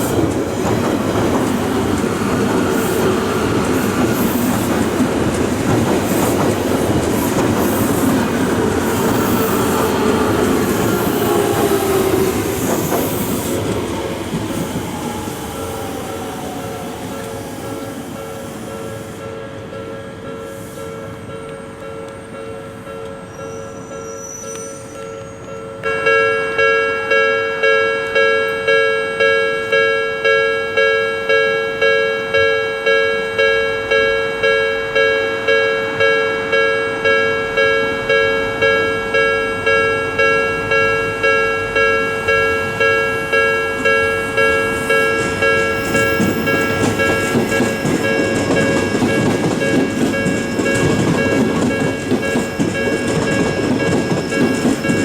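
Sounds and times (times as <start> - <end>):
train wheels clacking over rails: 0.0 - 19.2, 42.7 - 55.0
level crossing warning bell: 0.0 - 55.0.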